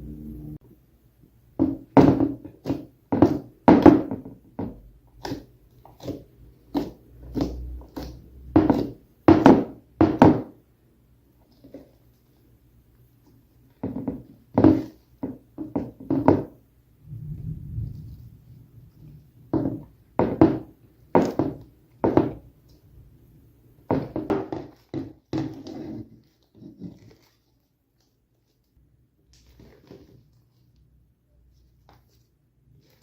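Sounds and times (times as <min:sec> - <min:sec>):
soft slime smear: 0:17.0 - 0:19.5.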